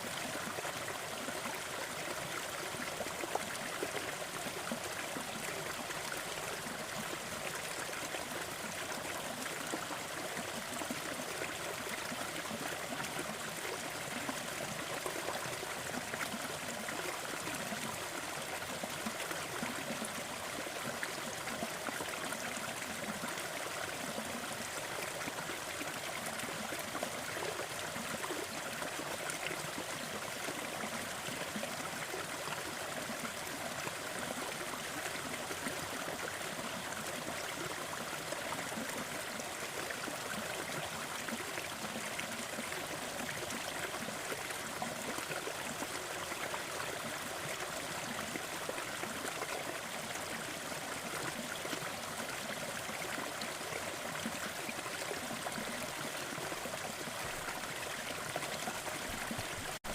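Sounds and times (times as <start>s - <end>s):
water trickling over rocks: 0.0s - 59.9s.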